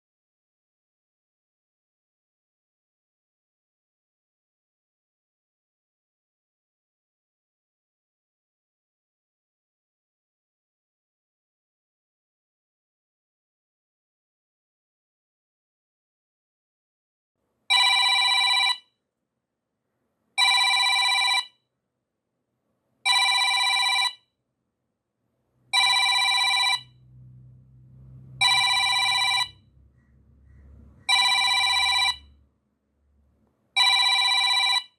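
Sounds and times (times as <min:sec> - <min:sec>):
digital timer alarm ringing: 0:25.8 - 0:26.9, 0:28.4 - 0:29.6, 0:31.1 - 0:32.3, 0:33.8 - 0:34.9.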